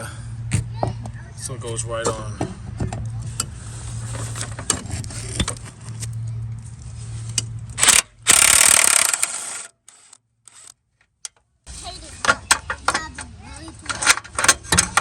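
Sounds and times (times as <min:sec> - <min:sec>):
ratchet wrench clicking: 0:07.8 - 0:10.7.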